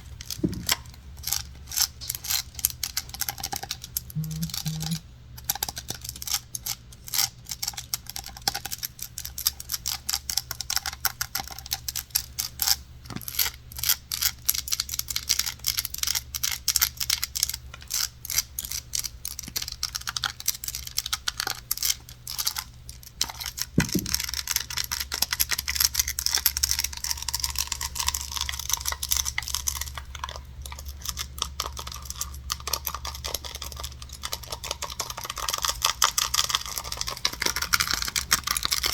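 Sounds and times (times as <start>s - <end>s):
fast tapping on hard objects: 4.2s - 5.0s, 23.8s - 24.8s.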